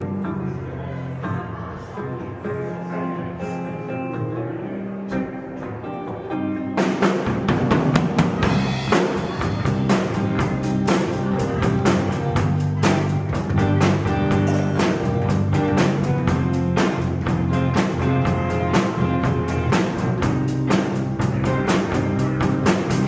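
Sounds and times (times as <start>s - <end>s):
electric guitar: 0.0s - 23.0s
live rock band playing: 2.5s - 23.0s
drum hits: 6.8s - 23.0s.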